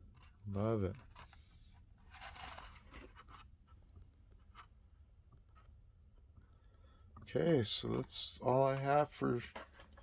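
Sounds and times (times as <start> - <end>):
rustling scrape of packaging: 1.2 - 3.3.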